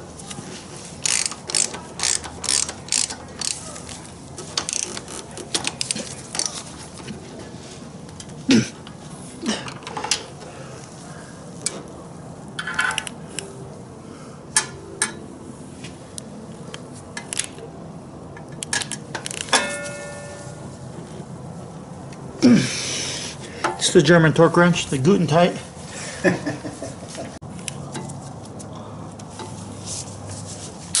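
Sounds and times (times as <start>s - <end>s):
metal tools clinking: 19.3s - 20.6s.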